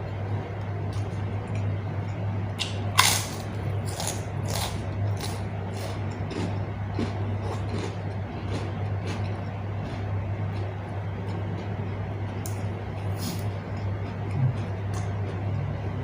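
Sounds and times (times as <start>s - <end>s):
steady low hum: 0.0s - 16.0s
chewing and crunching food: 0.9s - 16.0s.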